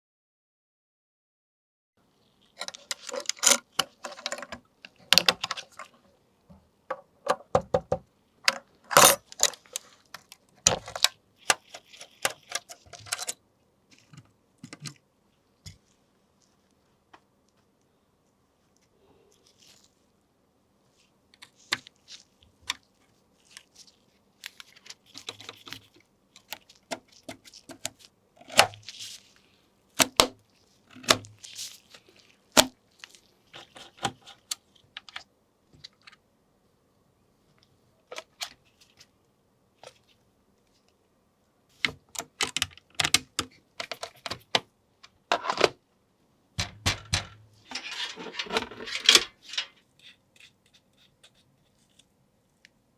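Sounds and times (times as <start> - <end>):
computer parts clicking and scraping: 2.6 - 6.0, 8.5 - 13.4, 46.6 - 51.5.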